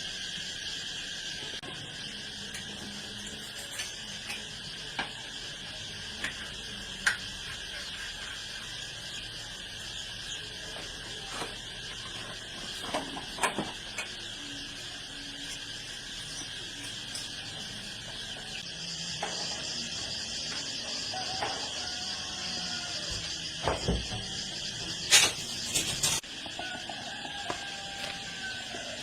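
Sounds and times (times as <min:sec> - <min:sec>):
crickets chirping: 0:00.0 - 0:29.0.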